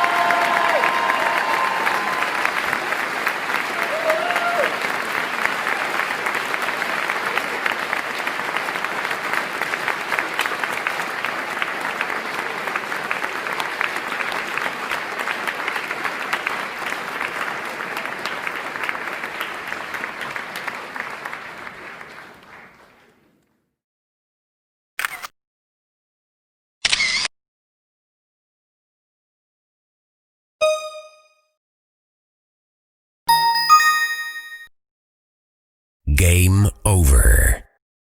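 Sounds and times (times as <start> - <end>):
crowd applauding: 0.0 - 23.0.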